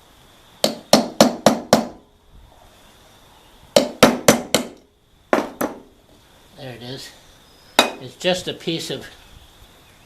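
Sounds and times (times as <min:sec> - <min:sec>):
hammer strikes on metal housing: 0:00.6 - 0:02.0, 0:03.8 - 0:04.8, 0:05.4 - 0:05.9, 0:07.8 - 0:08.0.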